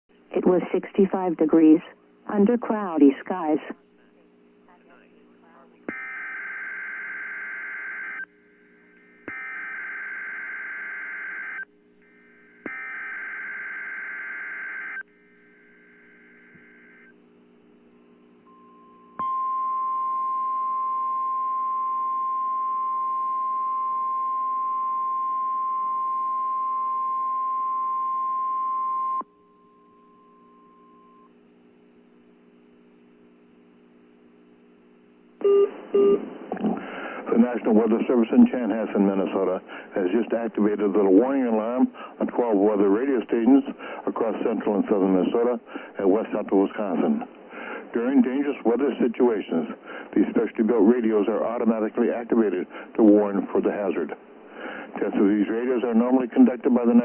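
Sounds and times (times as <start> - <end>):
faint steady hum: 0.1 - 57.0
warning alarm tone: 5.9 - 8.3, 9.0 - 17.1.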